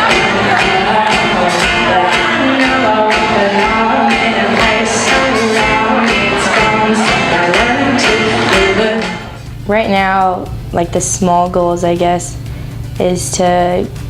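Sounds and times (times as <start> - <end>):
person singing: 0.0 - 9.4
acoustic rock band playing: 0.0 - 10.2
drum beat: 0.0 - 14.0.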